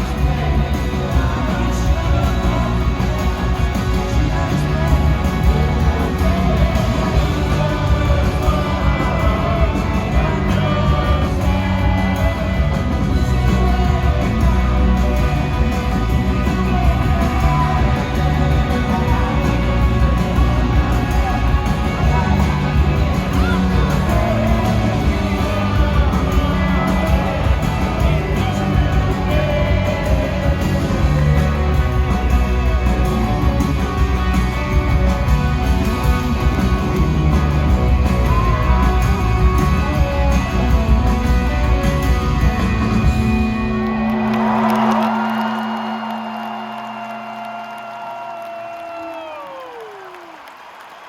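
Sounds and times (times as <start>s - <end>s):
person singing lead vocal: 0.0s - 34.0s
bass guitar: 0.0s - 48.0s
electric guitars: 0.0s - 48.4s
drums: 0.0s - 51.0s.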